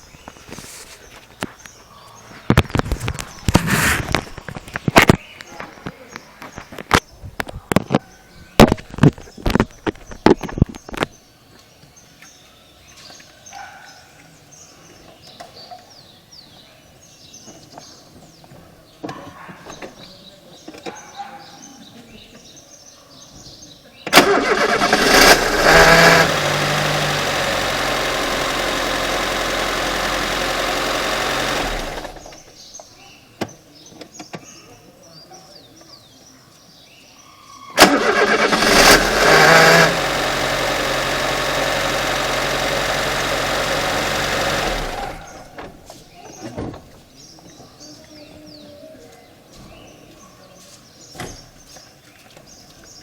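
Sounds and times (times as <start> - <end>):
car engine starting: 24.1 - 32.5, 37.8 - 45.8
harsh steady starter noise: 24.1 - 32.5, 37.8 - 45.6.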